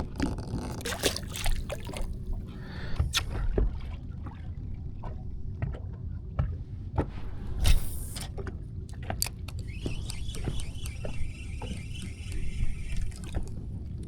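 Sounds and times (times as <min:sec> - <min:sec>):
low rumble of water: 0:00.0 - 0:14.0
wind: 0:00.0 - 0:14.0
knocks and clicks of gear: 0:05.6 - 0:14.0.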